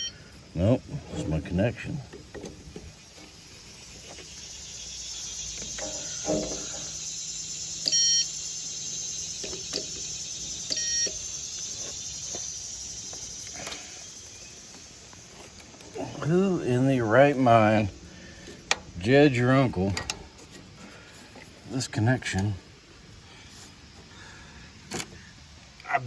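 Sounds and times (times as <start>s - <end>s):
steady high hiss: 0.0s - 26.0s
short electronic beeps: 7.8s - 8.4s.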